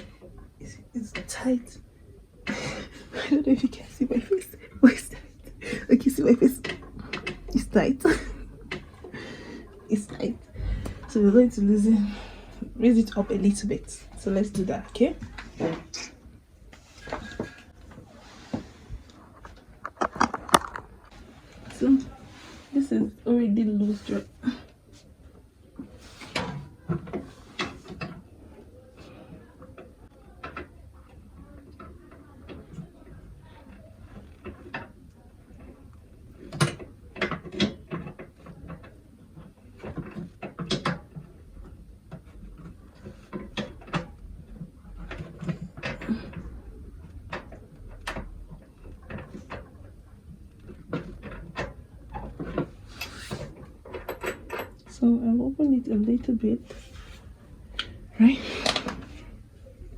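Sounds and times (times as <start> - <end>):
scraping rustle: 56.6 - 57.4.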